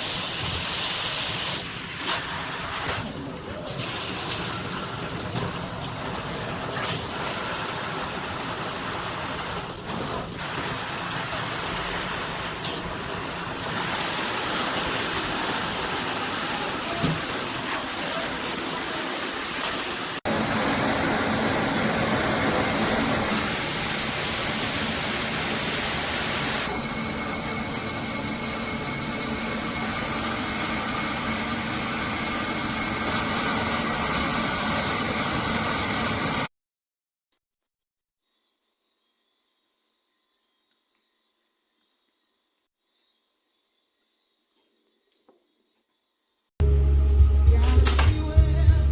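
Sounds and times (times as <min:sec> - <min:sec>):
shower head spraying water: 0:00.0 - 0:36.5.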